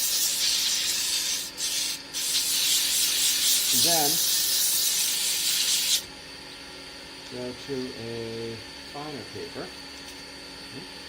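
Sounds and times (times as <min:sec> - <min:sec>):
sandpaper hissing on spinning wood: 0:00.0 - 0:06.1.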